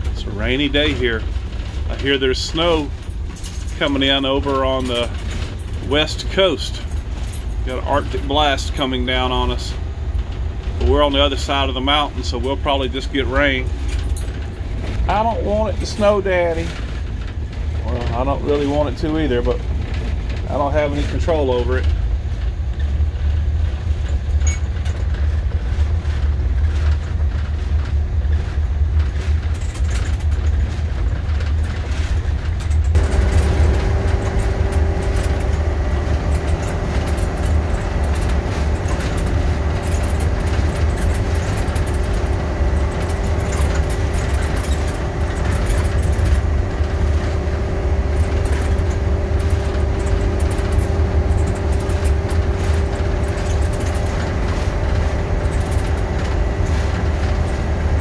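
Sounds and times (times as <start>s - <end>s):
engine and road rumble: 0.0s - 58.0s
steady hum: 32.9s - 58.0s.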